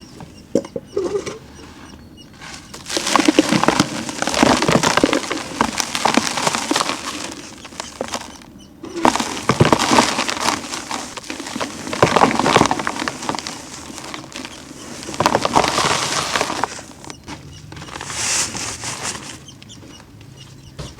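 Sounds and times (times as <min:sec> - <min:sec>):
concrete chunks crunching: 0:02.4 - 0:19.5.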